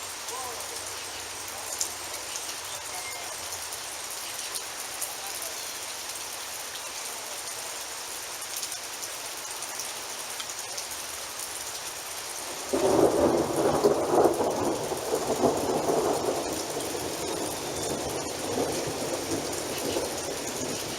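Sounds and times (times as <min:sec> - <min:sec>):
steady rain hiss: 0:00.0 - 0:20.9
thunderclap and rumble: 0:12.6 - 0:20.9.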